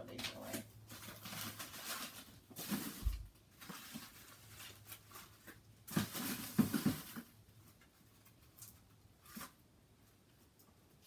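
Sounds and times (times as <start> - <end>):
packaging rustling: 0.4 - 7.4.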